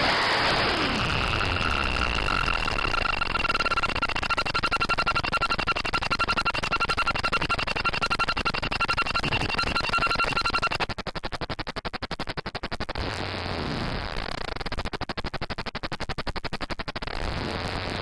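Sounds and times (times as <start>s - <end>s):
synthesizer tones over hiss: 0.0s - 10.9s
rapid synth pulsing: 0.0s - 11.0s.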